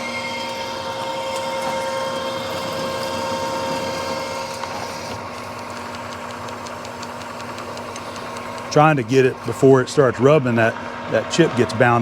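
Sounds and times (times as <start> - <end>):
lathe cutting metal: 0.0 - 5.9
steady motor hum: 0.0 - 12.0.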